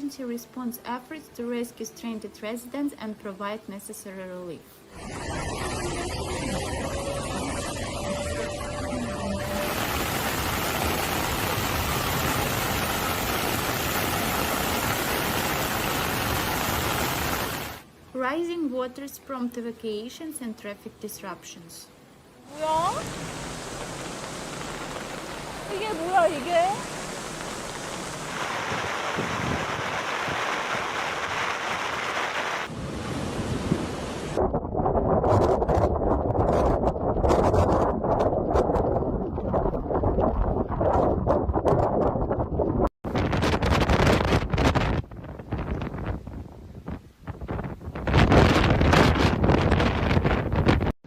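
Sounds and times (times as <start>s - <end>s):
low rumble: 4.9s - 15.0s, 22.6s - 31.7s, 32.7s - 43.4s
steady rushing noise: 4.9s - 18.0s, 22.4s - 50.9s
wind buffeting the microphone: 22.7s - 51.0s.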